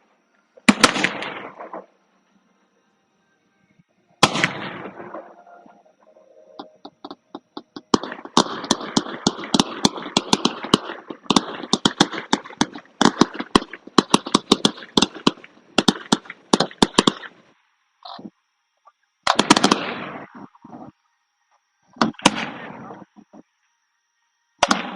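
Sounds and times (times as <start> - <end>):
fireworks bangs and crackles: 0.6 - 1.9, 4.2 - 5.3, 6.9 - 17.4, 19.3 - 20.9.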